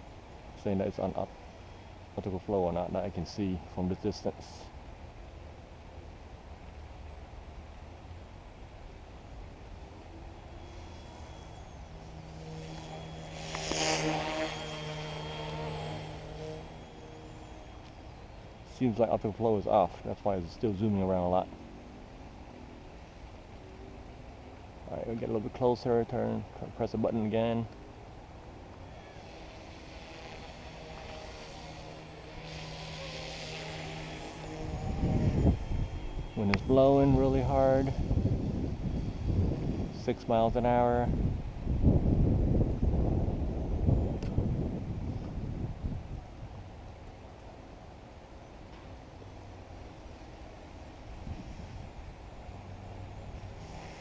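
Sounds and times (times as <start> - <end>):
model helicopter rotors whirring: 0.0 - 54.0
wind rumble on microphone: 33.4 - 46.9, 51.0 - 54.0.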